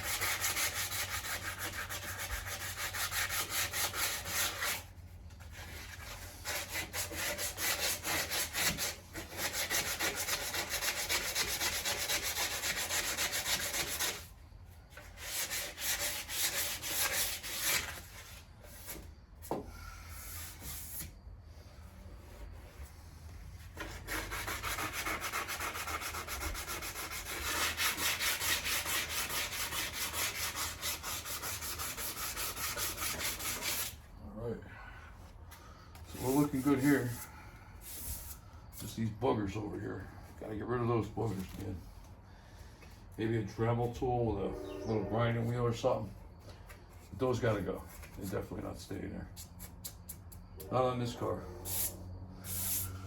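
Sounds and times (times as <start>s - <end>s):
sandpaper scrubbing on metal: 0.0s - 14.3s, 15.0s - 19.0s, 23.7s - 34.0s, 36.1s - 37.3s.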